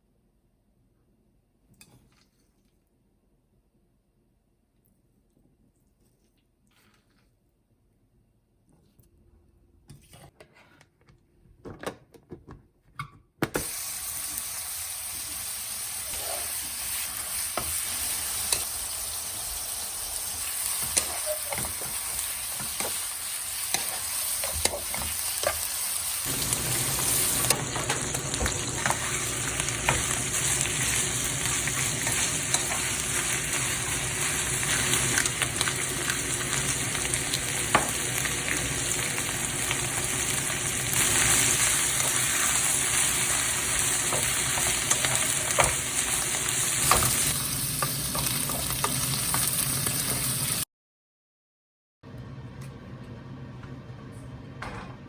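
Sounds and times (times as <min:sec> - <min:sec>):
food sizzling in a frying pan: 0:13.6 - 0:50.6.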